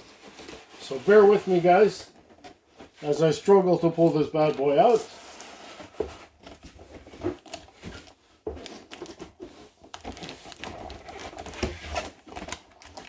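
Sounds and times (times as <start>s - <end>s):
plastic packaging clicks and knocks: 2.1s - 3.0s, 3.8s - 13.0s.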